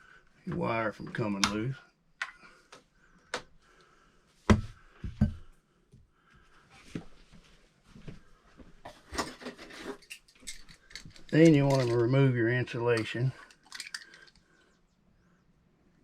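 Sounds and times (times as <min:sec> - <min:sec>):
tools and parts knocking and clicking: 0:09.2 - 0:12.0, 0:13.5 - 0:14.4.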